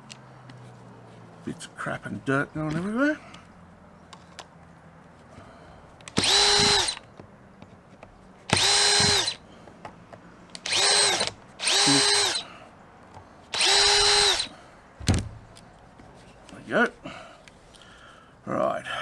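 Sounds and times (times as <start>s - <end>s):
cordless drill whining: 6.1s - 7.1s, 8.5s - 9.5s, 10.6s - 12.6s, 13.5s - 14.6s.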